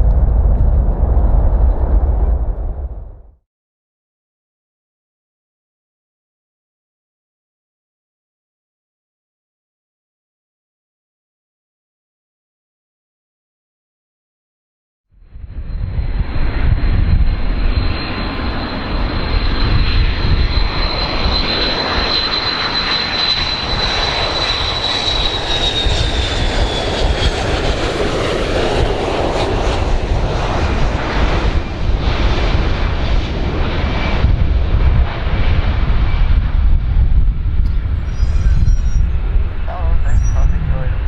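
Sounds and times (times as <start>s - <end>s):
airplane engines running: 0.0s - 3.2s, 15.2s - 41.0s
high engine whine: 15.4s - 41.0s.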